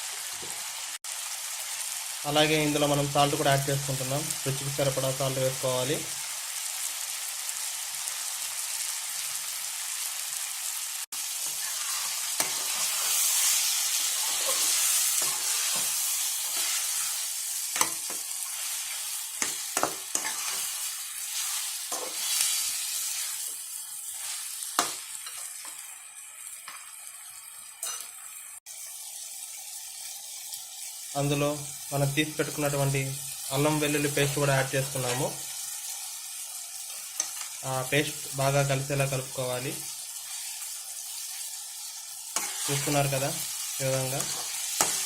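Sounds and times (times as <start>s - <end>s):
food sizzling in oil: 0.0s - 45.0s
spoon scraping a pan: 11.4s - 23.5s, 24.1s - 25.8s, 42.4s - 45.0s.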